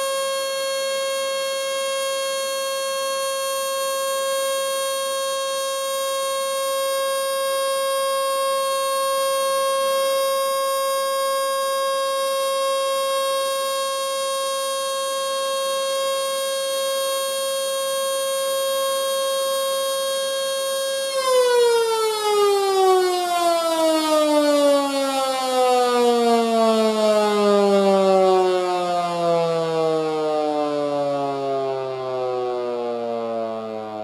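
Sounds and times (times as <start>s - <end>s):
electric siren steady tone: 0.0s - 34.0s
siren winding down: 19.7s - 34.0s.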